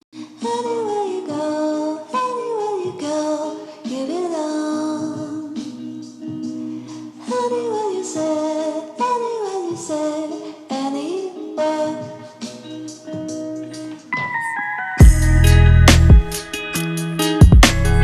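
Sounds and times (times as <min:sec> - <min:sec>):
song with sung vocals: 0:00.2 - 0:16.6.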